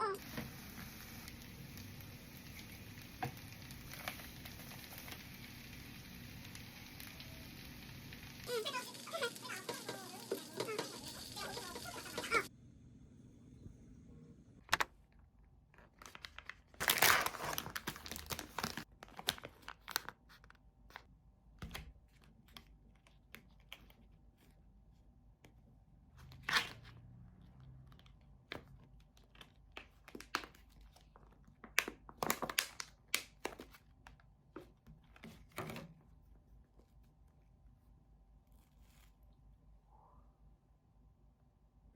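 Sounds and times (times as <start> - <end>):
crinkly material rustling: 15.0 - 21.1, 26.4 - 39.6.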